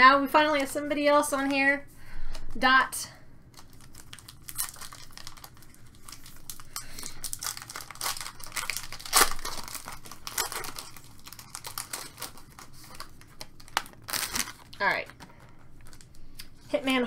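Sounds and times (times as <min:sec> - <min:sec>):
wrapper crinkling and tearing: 0:03.5 - 0:16.6.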